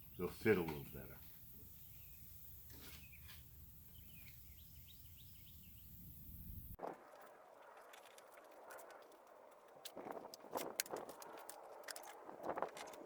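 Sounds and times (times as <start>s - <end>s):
faint bird chirps: 0.0s - 6.8s.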